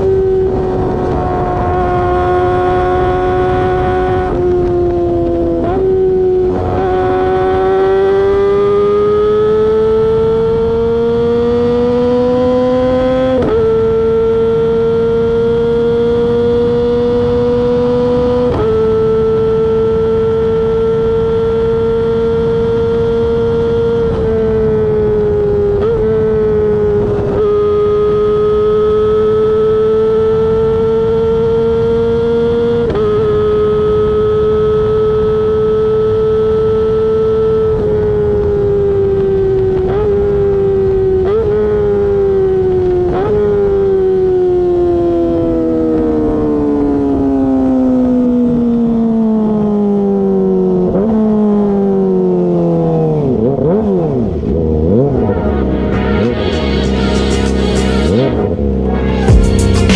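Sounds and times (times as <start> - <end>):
motorcycle engine at high revs: 0.0 - 59.9.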